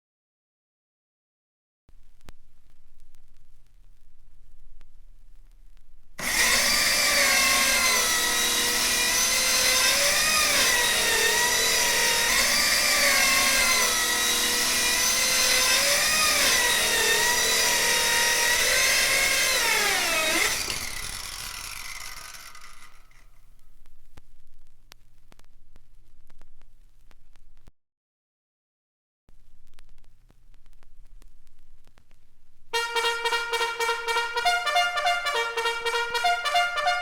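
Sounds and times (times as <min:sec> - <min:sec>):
power tool motor whine: 0:06.2 - 0:23.3.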